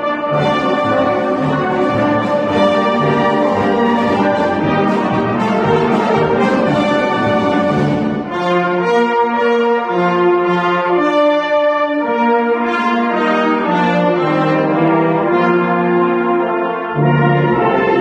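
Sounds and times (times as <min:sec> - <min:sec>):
brass band playing slow chords: 0:00.0 - 0:18.0.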